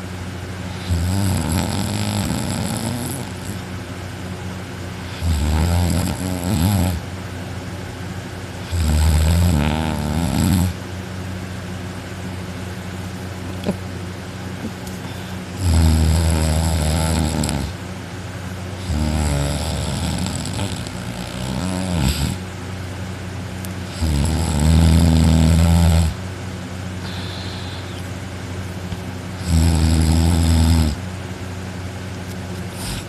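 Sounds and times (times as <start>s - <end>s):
steady low hum: 0.0s - 33.0s
person snoring loudly: 0.7s - 3.6s, 5.0s - 7.0s, 8.6s - 10.8s, 15.0s - 17.8s, 18.8s - 22.4s, 23.9s - 26.2s, 27.0s - 28.0s, 29.4s - 31.0s, 32.8s - 33.0s.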